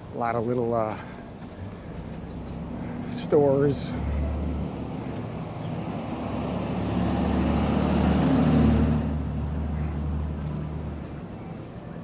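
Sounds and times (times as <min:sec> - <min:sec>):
vehicle driving past: 0:02.0 - 0:11.3.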